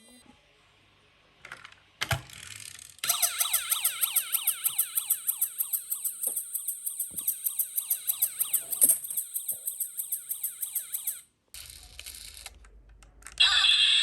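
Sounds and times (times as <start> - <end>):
toy siren yelping: 3.0 - 11.2, 13.4 - 14.0.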